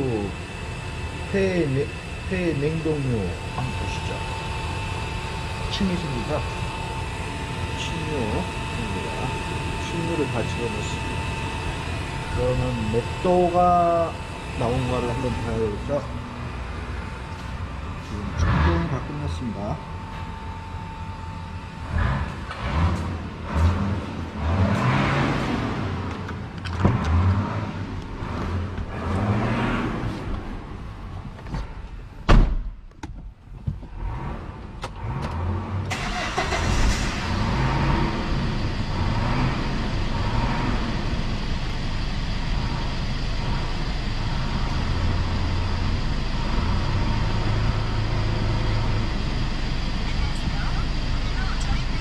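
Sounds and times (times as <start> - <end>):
car engine starting and idling: 0.0 - 52.0
loud knock: 32.3 - 32.7.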